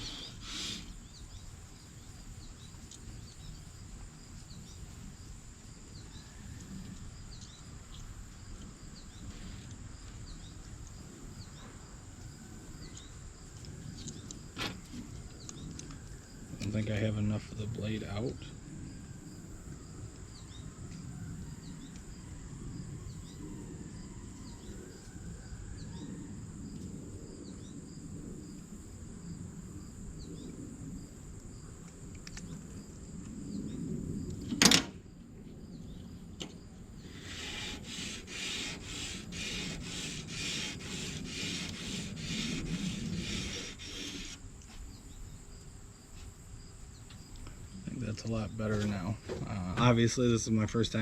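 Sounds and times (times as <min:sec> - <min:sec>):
blade scraping on sandpaper: 0:37.1 - 0:44.4.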